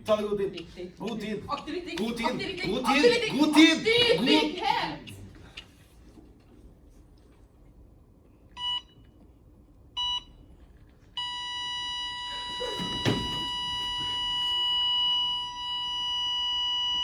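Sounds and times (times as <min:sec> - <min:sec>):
thump: 0:12.8 - 0:13.6.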